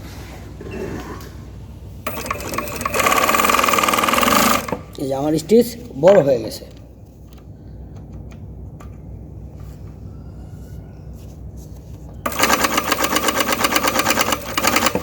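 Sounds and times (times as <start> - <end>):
sewing machine running: 2.1 - 4.9, 12.2 - 15.0.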